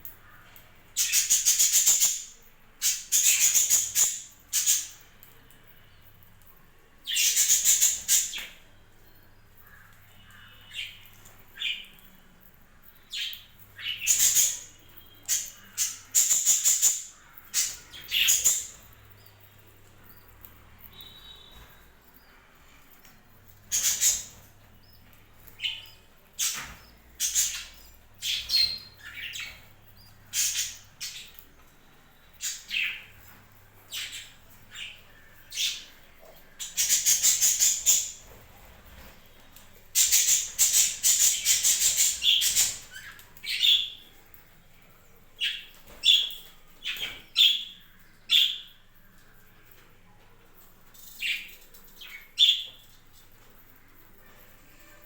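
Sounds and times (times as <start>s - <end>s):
budgerigars chirping and squawking: 0.3s - 5.1s, 7.1s - 8.6s, 13.1s - 18.9s, 23.7s - 29.7s, 30.3s - 31.4s, 32.4s - 39.2s, 39.9s - 44.0s.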